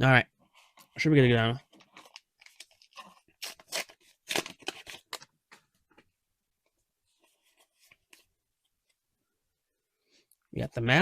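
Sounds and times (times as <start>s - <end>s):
cards rustling and sliding: 1.6s - 5.7s.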